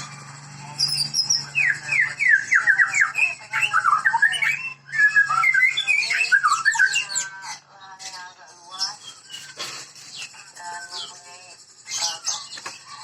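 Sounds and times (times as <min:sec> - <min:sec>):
songbird whistling and warbling: 0:00.7 - 0:07.7, 0:08.7 - 0:13.0.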